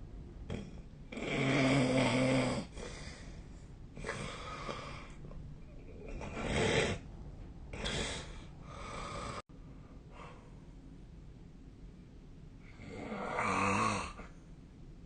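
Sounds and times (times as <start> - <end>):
person snoring: 0.5 - 3.3, 4.0 - 5.2, 5.8 - 7.1, 7.7 - 9.4, 12.8 - 14.3.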